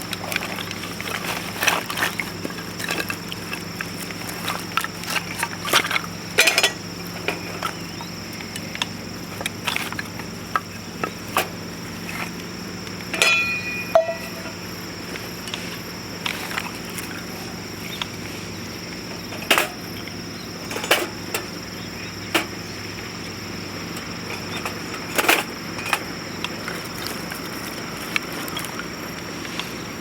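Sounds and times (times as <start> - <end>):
dry wood snapping and crackling: 0.0 - 30.0
metallic clink: 13.1 - 14.7.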